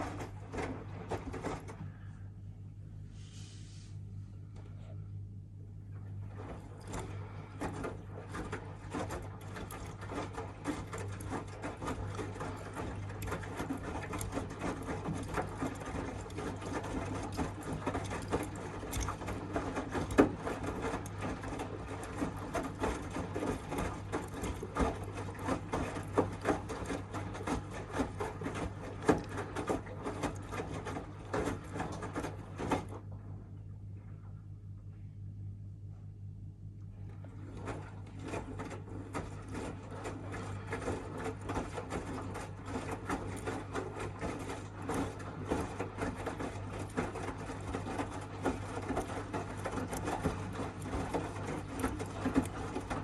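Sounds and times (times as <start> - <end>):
washing machine humming: 0.0 - 53.0.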